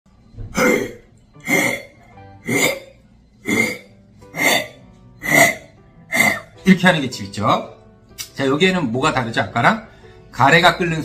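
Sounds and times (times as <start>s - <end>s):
wet phlegmy cough: 4.4s - 6.5s.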